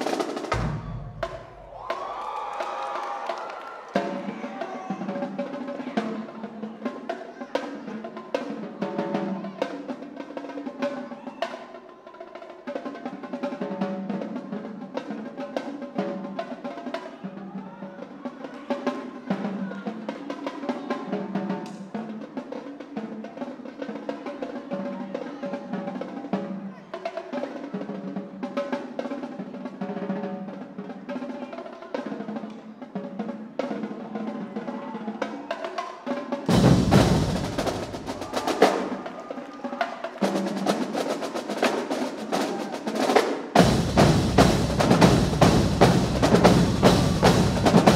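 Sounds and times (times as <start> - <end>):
snare drum rolls: 0.0 - 6.8, 32.0 - 47.9
tenor drums: 0.0 - 47.9.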